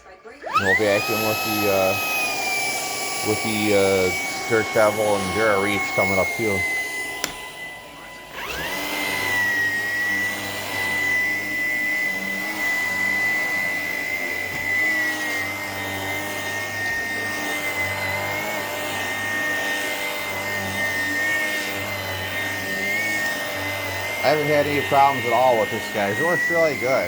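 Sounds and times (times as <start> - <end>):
vacuum cleaner motor whine: 0.0 - 27.0.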